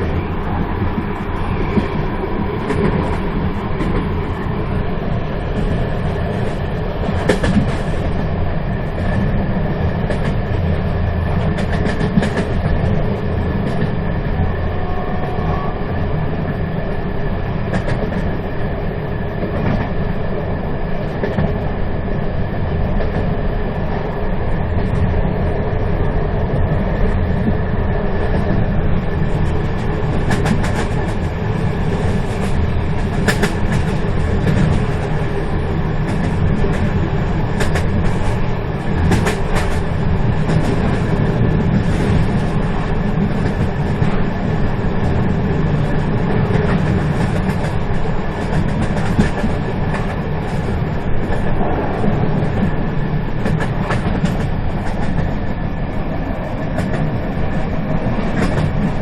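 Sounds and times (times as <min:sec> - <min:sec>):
train wheels rumbling on rails: 0:00.0 - 0:59.0.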